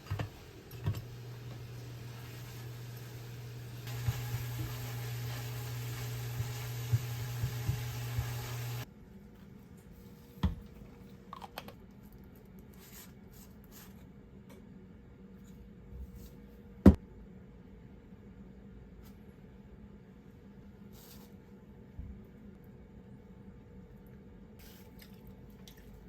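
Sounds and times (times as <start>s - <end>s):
steady hum: 0.0s - 8.9s.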